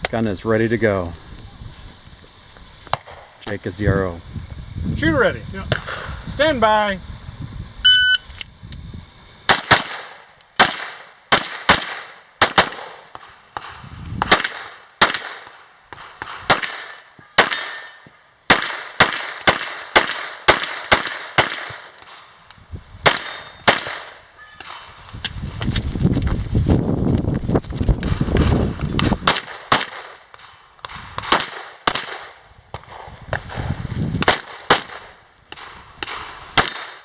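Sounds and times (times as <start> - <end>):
pistol shots: 9.5 - 13.3, 14.3 - 15.6, 16.2 - 22.2, 23.0 - 24.9, 29.2 - 30.5, 31.2 - 33.0, 34.2 - 37.0.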